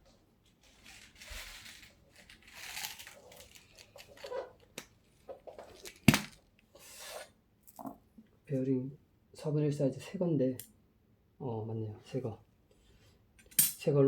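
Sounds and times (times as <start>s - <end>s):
packet rustling and crinkling: 0.5s - 6.5s.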